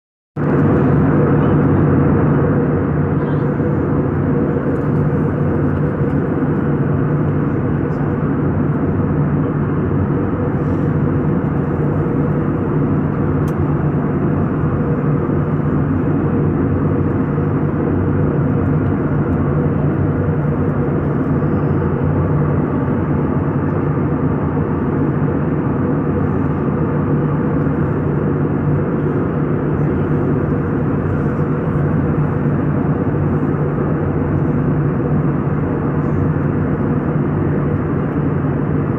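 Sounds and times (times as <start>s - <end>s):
aircraft engine drone in cabin: 0.4s - 38.9s.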